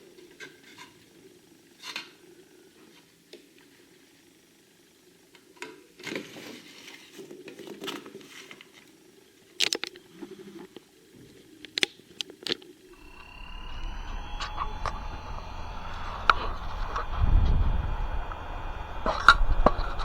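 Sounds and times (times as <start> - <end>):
steady whine with low hum: 12.9 - 20.0.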